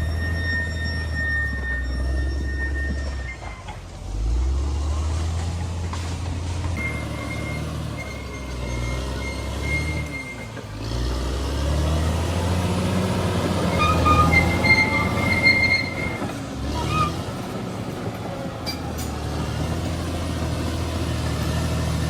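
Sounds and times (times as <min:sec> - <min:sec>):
high-pitched metallic squeal: 0:00.0 - 0:04.4, 0:06.8 - 0:11.0, 0:12.9 - 0:17.6, 0:18.6 - 0:19.2
bulldozer diesel engine: 0:00.0 - 0:22.0.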